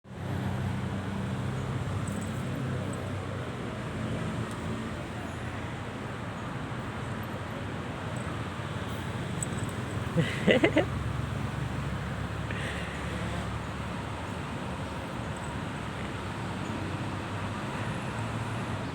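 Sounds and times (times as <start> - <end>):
outdoor background rumble and hiss: 0.1 - 18.9.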